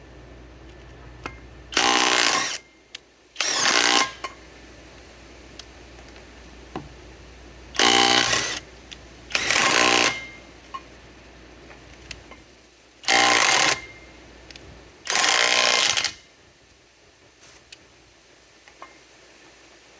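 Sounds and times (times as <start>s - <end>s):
impact wrench hammering: 7.8s - 8.6s, 9.4s - 10.4s.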